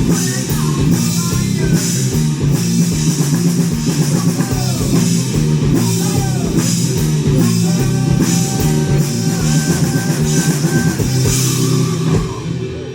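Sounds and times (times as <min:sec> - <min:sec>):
distorted guitar: 0:00.0 - 0:12.9
rock band playing loudly: 0:00.0 - 0:12.9.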